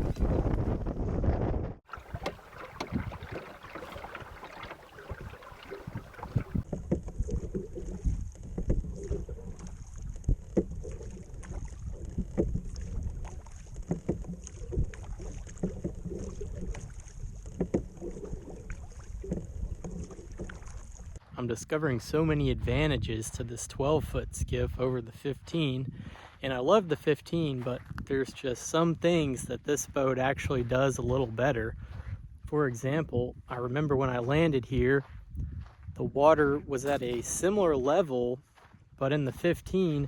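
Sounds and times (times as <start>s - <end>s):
wind on microphone: 0.0s - 26.4s, 27.3s - 40.0s
oars knocking and splashing: 1.9s - 21.2s.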